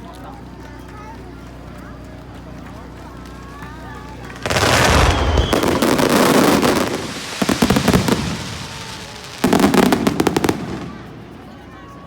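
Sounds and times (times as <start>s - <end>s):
fireworks bursting and crackling: 3.1s - 11.9s.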